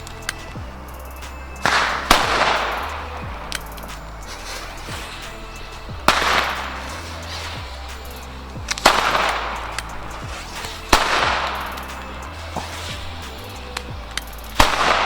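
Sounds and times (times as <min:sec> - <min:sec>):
firecracker bangs with echo: 0:00.0 - 0:15.0
music with deep bass: 0:00.0 - 0:15.0
small firecracker crack: 0:00.0 - 0:15.0.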